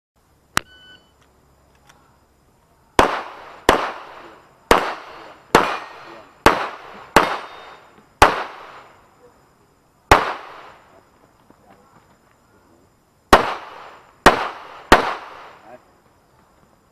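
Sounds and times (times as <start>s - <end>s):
short beep: 0.6s - 1.2s.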